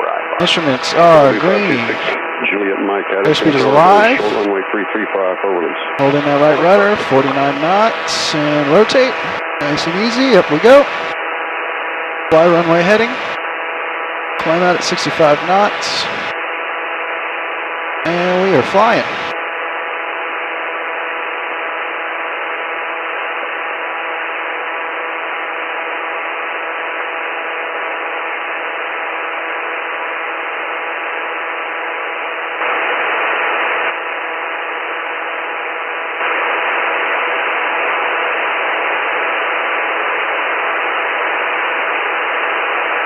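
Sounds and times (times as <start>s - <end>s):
aircraft engine drone: 0.2s - 4.8s, 14.4s - 16.3s.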